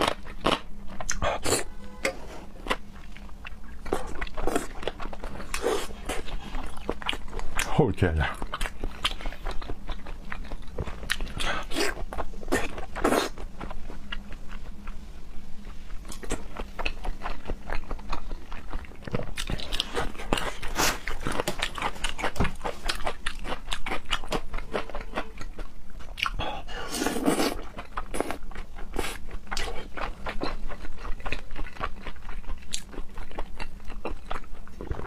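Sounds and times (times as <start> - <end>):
person chewing crunchy food: 0.0 - 15.0, 15.6 - 35.0.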